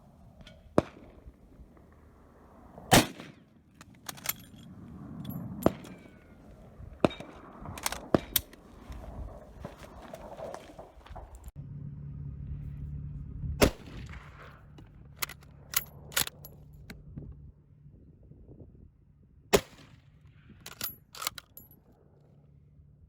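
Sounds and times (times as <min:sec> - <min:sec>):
loud gunshots: 0:02.9 - 0:03.4.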